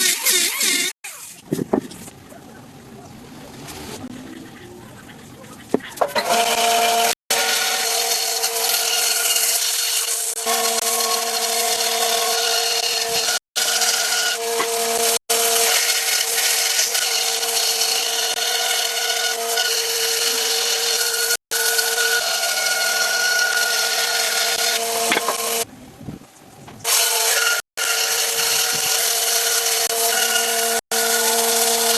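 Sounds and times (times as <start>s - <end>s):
power tool grinding wood: 6.1s - 25.7s, 26.9s - 31.9s.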